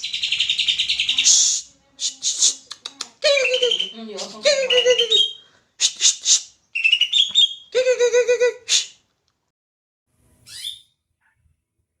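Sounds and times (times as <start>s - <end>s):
bird singing warbling phrases: 0.0s - 5.5s, 6.8s - 8.6s, 10.5s - 10.9s.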